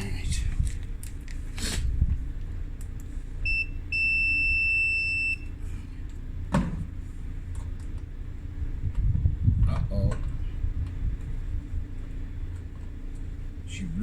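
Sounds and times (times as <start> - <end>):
low hum: 0.0 - 14.0
meter continuity beeps: 3.4 - 5.6.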